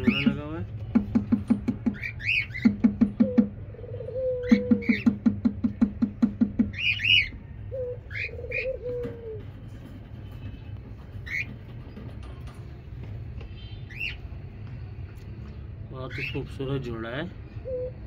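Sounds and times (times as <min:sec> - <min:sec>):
parakeets chirping: 0:00.0 - 0:00.6, 0:01.7 - 0:03.6, 0:04.4 - 0:05.4, 0:06.4 - 0:09.0, 0:10.3 - 0:12.0, 0:13.4 - 0:14.5, 0:15.5 - 0:18.0.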